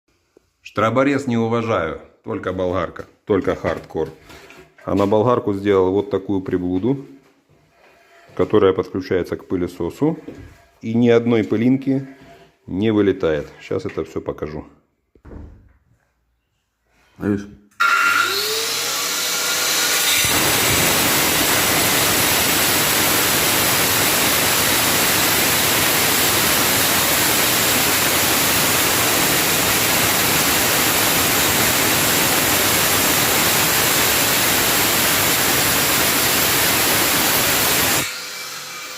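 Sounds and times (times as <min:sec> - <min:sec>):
angle grinder cutting wall: 0:17.8 - 0:38.9
vacuum cleaner running: 0:17.8 - 0:38.9.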